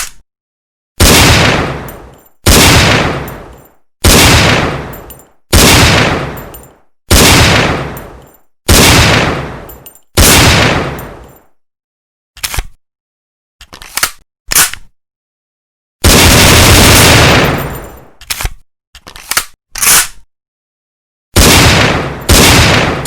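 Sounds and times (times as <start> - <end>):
pistol shots echoing: 1.0 - 11.4, 16.0 - 18.0, 21.4 - 23.0.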